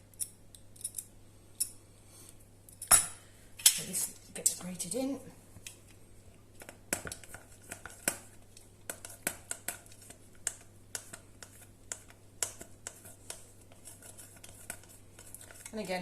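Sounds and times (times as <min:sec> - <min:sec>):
cheese being grated by hand: 0:11.0 - 0:16.0.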